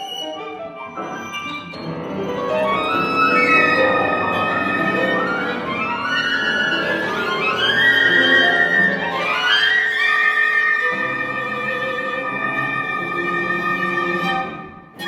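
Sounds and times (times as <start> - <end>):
violin glissando slides: 0.0 - 15.0
chamber quintet playing: 1.9 - 9.8.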